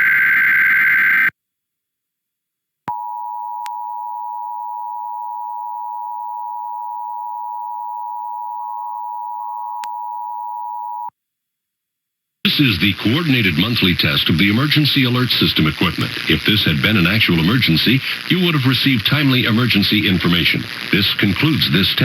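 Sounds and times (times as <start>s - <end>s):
harsh squealing data tone: 0.0s - 1.3s.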